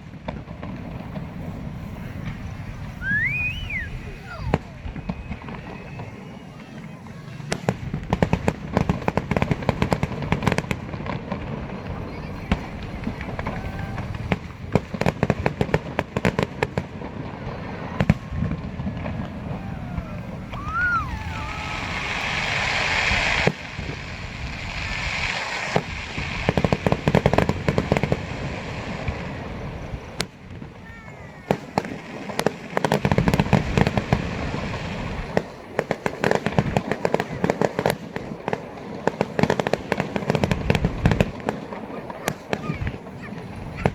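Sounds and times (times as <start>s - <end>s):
fireworks crackling bangs: 0.0s - 43.9s
rising hiss: 17.6s - 26.6s.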